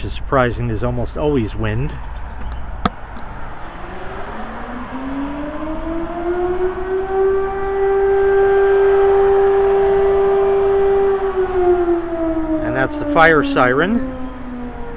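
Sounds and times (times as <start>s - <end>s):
fire siren winding up: 3.8s - 14.9s.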